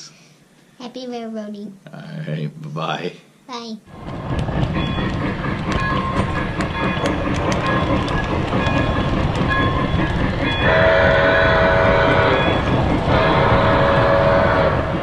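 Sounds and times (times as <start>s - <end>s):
model train rumble: 3.9s - 15.0s
model train wheels clicking: 3.9s - 15.0s
steam whistle chord: 10.6s - 15.0s.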